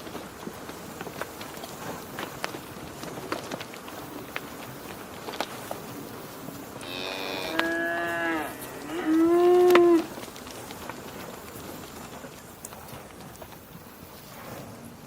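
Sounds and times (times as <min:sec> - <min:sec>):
faint clicks and ticks: 0:00.0 - 0:15.0
cow mooing: 0:06.8 - 0:10.1.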